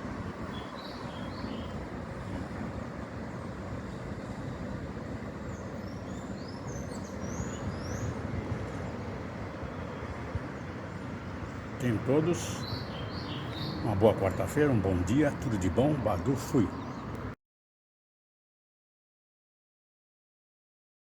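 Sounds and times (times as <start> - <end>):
street traffic rumble: 0.0 - 17.4
bird chirps: 0.5 - 1.8, 5.4 - 8.9, 10.0 - 17.2.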